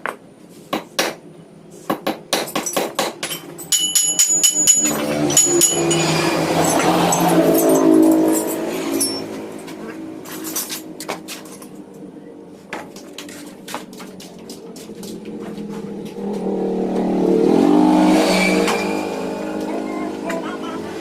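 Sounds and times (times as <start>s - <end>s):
vehicle engine revving: 4.8s - 10.6s, 15.0s - 21.0s.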